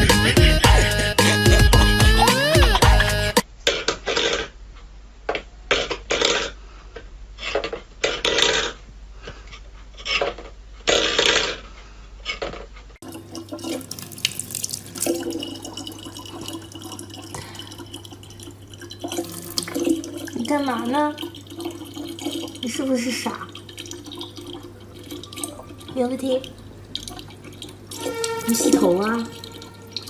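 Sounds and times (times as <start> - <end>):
running water: 13.0 - 30.0
water splashing into sink: 13.0 - 30.0.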